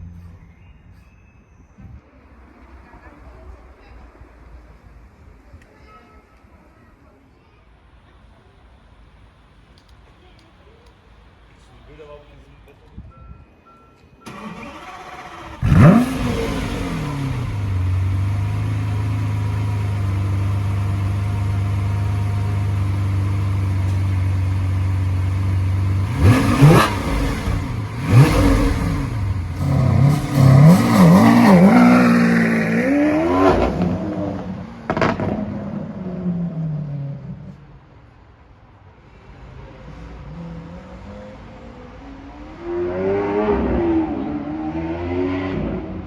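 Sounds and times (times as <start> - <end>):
engine backfire crack: 14.2 - 17.8
sports car engine starting and revving: 14.3 - 37.6, 40.3 - 46.0.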